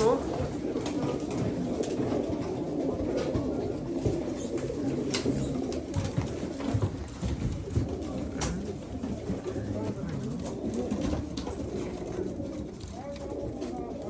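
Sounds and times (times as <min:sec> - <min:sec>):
pigeons cooing: 0:00.0 - 0:14.0.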